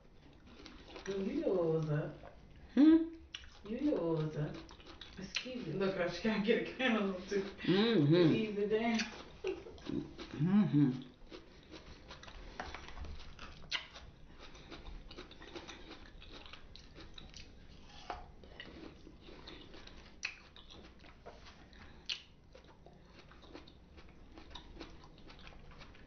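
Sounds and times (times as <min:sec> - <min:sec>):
person chewing fruit: 0:00.0 - 0:26.0
sharp mouth clicks: 0:09.0 - 0:09.2.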